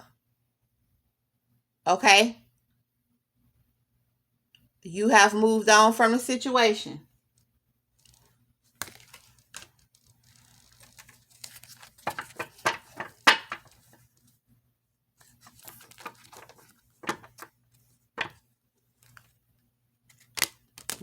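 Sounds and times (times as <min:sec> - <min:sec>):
cards being shuffled: 0:08.0 - 0:14.3, 0:15.2 - 0:19.4, 0:20.0 - 0:21.0.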